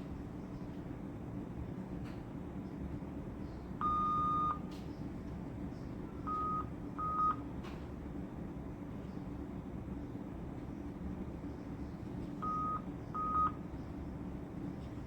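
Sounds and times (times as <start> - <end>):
medical alarm beeping: 3.8 - 4.6, 12.4 - 13.6.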